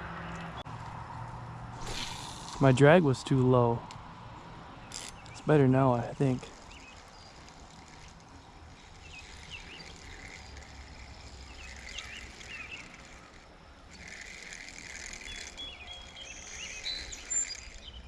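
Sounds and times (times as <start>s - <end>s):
fishing reel ratcheting whir: 1.8s - 2.8s, 4.9s - 5.4s, 6.0s - 18.0s.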